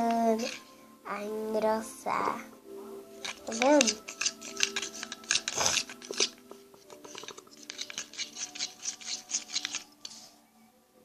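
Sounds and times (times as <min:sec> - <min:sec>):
spoon scraping thick mixture: 0:00.0 - 0:00.8, 0:03.0 - 0:10.4.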